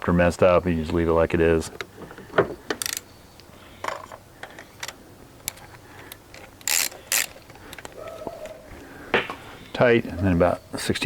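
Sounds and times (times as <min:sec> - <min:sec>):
hand tools clicking and rattling: 0:01.8 - 0:03.1, 0:03.8 - 0:08.6
ratchet ticking: 0:06.6 - 0:07.3.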